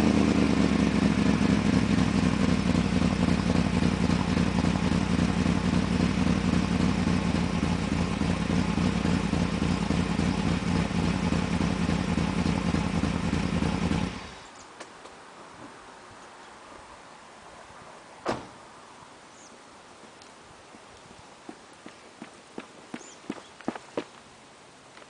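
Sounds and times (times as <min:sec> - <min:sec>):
car engine running rough: 0:00.0 - 0:14.5.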